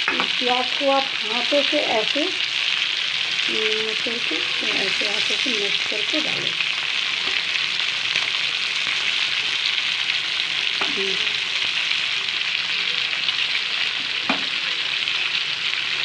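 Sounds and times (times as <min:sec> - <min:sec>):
spoon knocking against pan: 0:00.0 - 0:00.4, 0:14.3 - 0:14.6
onions and chicken sizzling in oil: 0:00.0 - 0:16.0.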